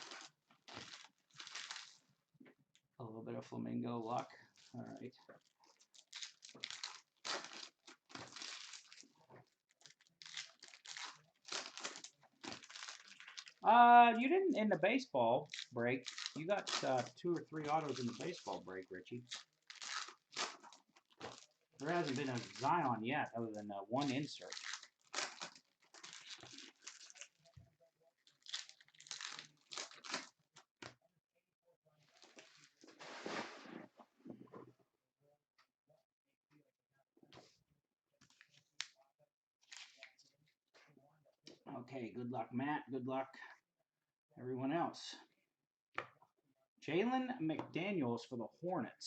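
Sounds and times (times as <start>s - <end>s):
foil wrappers crinkling and tearing: 0.0s - 2.0s, 4.5s - 13.6s, 15.4s - 23.0s, 23.9s - 27.6s, 28.2s - 30.7s, 32.0s - 33.5s, 39.6s - 40.1s.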